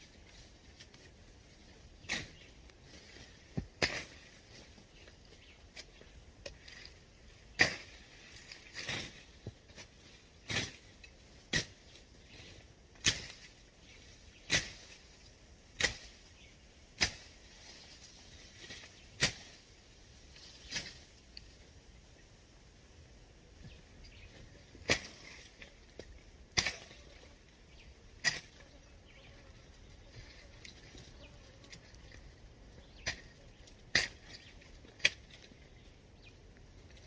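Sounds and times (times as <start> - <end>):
machete chopping brush: 2.0 - 2.5, 3.1 - 4.7, 7.5 - 11.9, 13.0 - 13.6, 14.4 - 15.0, 15.7 - 16.3, 17.0 - 17.8, 18.6 - 19.7, 24.8 - 27.2, 28.2 - 28.7, 32.8 - 35.5.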